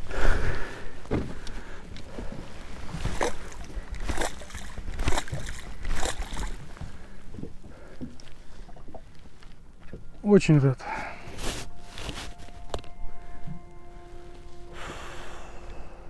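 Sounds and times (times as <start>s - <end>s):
waves slapping boat hull: 1.1s - 9.5s.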